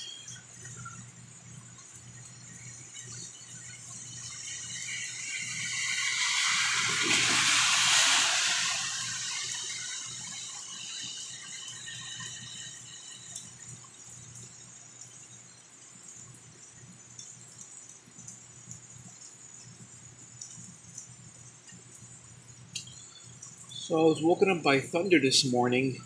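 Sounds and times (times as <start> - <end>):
heavy rain rushing: 4.6 - 11.0.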